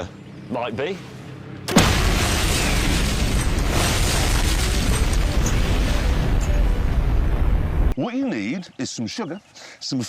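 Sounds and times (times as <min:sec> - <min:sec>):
dense rumble: 0:01.6 - 0:08.0
loud explosion: 0:01.7 - 0:07.9.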